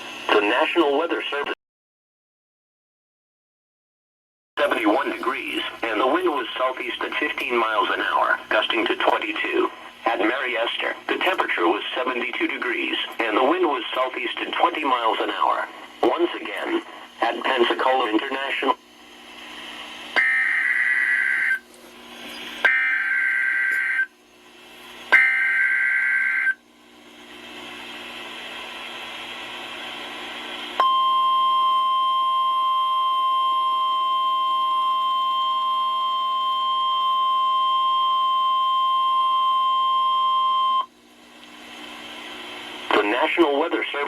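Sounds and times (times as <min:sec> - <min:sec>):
radio hiss: 0:00.0 - 0:01.6, 0:04.6 - 0:20.1, 0:20.8 - 0:22.7, 0:41.5 - 0:44.0
steady warning alarm tone: 0:20.1 - 0:24.2, 0:25.1 - 0:26.6, 0:30.8 - 0:40.9.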